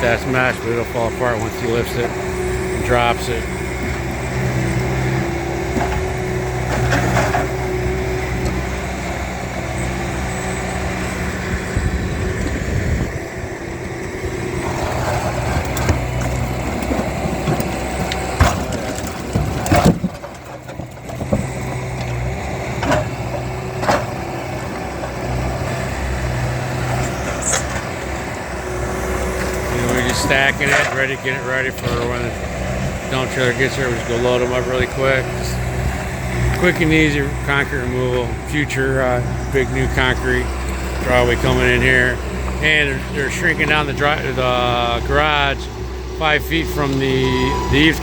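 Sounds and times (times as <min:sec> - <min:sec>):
heavy equipment engine running: 0:00.0 - 0:48.0
concrete cracking and thudding: 0:14.6 - 0:24.3.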